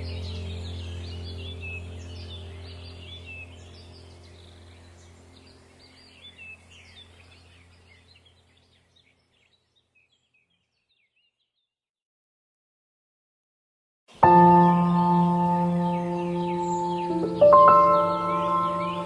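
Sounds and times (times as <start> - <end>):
low steady drone: 0.0 - 7.9, 14.2 - 19.0
birds chirping: 0.0 - 11.7, 14.1 - 19.0.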